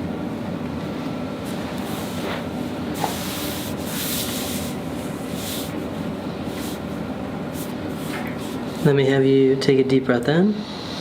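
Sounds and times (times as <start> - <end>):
low room hum: 0.0 - 11.0
hands rubbing skin and clothing: 1.5 - 9.0.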